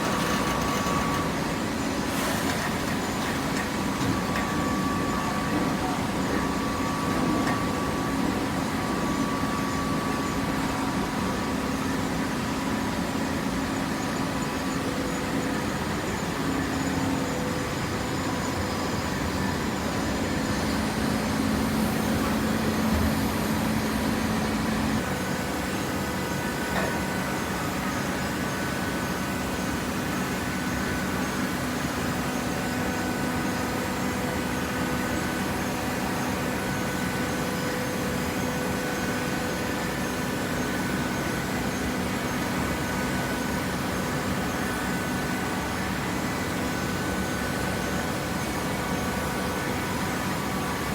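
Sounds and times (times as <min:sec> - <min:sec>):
baling machine humming: 0:00.0 - 0:10.3.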